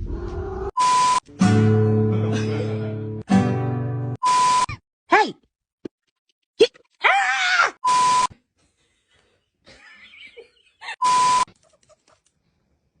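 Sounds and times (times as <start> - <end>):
short electronic beeps: 4.2 - 4.8, 7.8 - 8.3, 11.0 - 11.5.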